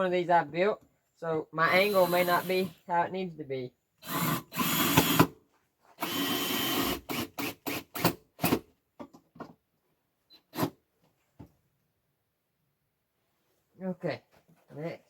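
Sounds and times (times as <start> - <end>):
power drill driving screw: 1.7 - 2.7, 4.0 - 5.4, 6.0 - 8.6, 10.4 - 10.8.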